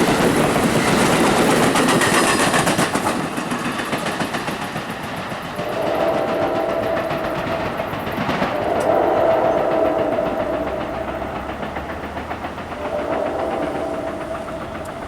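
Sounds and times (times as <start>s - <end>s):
train wheels clattering on rails: 0.0s - 15.0s
engine drone: 5.4s - 15.0s.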